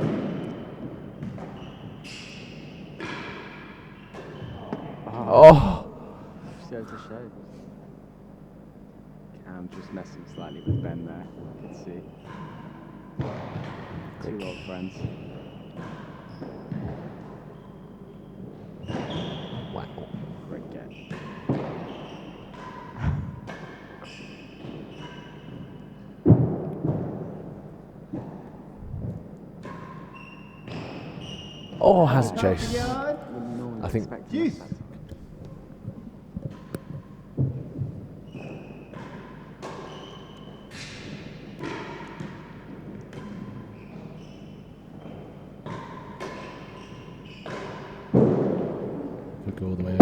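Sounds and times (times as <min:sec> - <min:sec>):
shoes squeaking on court floor: 0:00.1 - 0:04.9, 0:10.4 - 0:11.0, 0:33.9 - 0:47.6.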